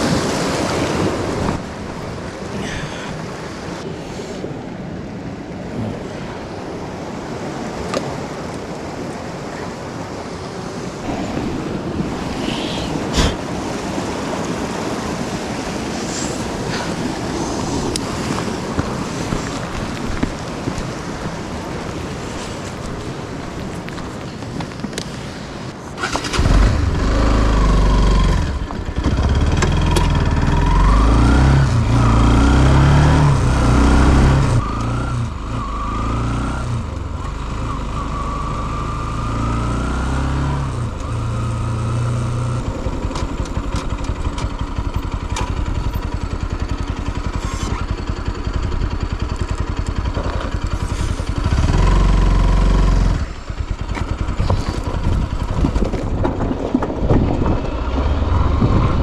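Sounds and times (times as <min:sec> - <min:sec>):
motorcycle engine revving: 0:26.0 - 0:55.8.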